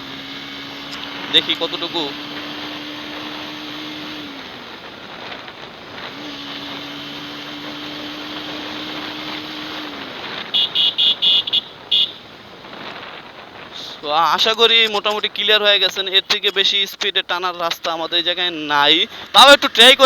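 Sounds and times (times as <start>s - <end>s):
held engine tone: 0.0s - 12.3s
wind and road noise: 0.0s - 20.0s
short horn beeps: 10.5s - 12.2s.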